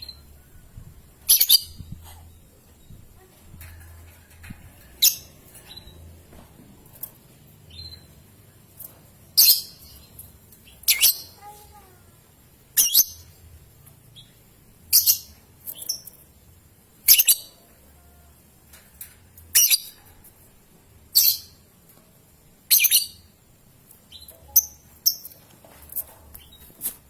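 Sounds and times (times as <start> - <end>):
bird high-pitched chirps: 1.3 - 3.0, 7.7 - 8.2, 9.4 - 11.6, 12.8 - 13.4, 17.1 - 17.6, 21.2 - 21.6, 22.7 - 23.3.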